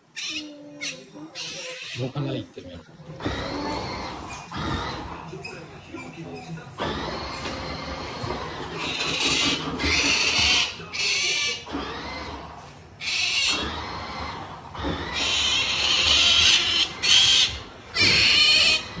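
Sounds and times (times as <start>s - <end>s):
otter high-pitched squeals: 13.0s - 19.0s.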